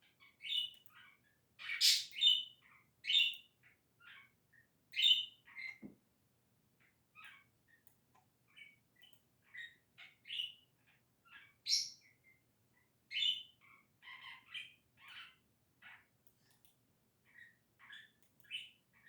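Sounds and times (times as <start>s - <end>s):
budgerigar chirping and warbling: 0.1s - 5.8s, 9.4s - 12.1s, 13.1s - 16.1s, 17.3s - 19.0s.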